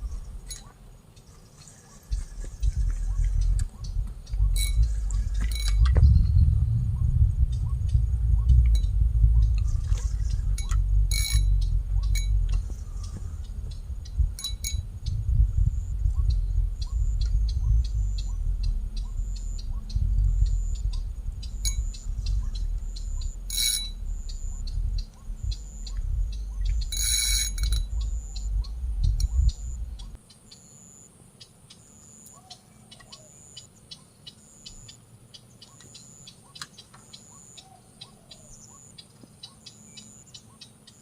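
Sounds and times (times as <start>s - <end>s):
low rumble: 2.1s - 30.2s
ringing metallic clinks: 5.5s - 5.8s, 14.4s - 14.8s, 23.5s - 24.0s, 26.9s - 27.9s.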